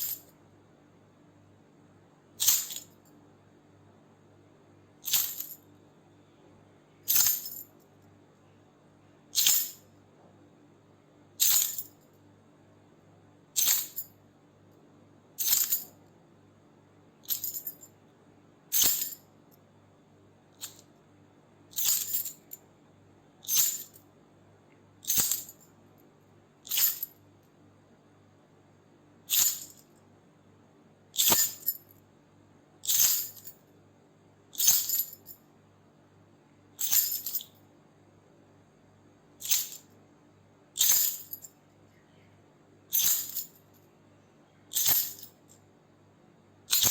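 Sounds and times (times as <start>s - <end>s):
metal keys jingling: 2.4s - 2.9s, 5.1s - 5.6s, 9.4s - 9.8s, 13.6s - 14.1s, 15.4s - 15.9s, 17.3s - 17.8s, 18.8s - 19.2s, 21.8s - 22.5s, 23.5s - 24.0s, 25.0s - 25.6s, 26.7s - 27.1s, 29.3s - 29.8s, 31.2s - 31.8s, 32.8s - 33.5s, 34.6s - 35.3s, 36.8s - 37.5s, 39.4s - 39.8s, 40.8s - 41.5s, 42.9s - 43.6s, 44.7s - 45.3s.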